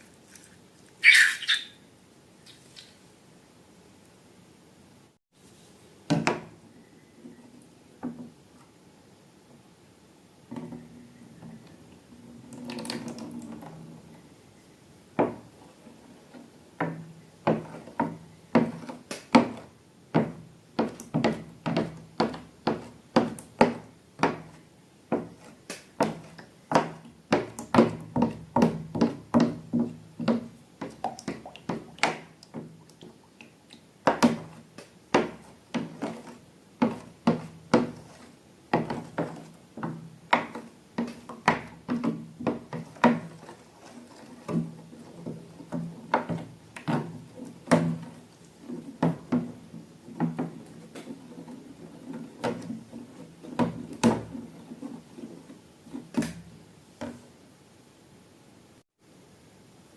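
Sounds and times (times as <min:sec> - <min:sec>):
soft rustle: 0:00.0 - 0:01.5.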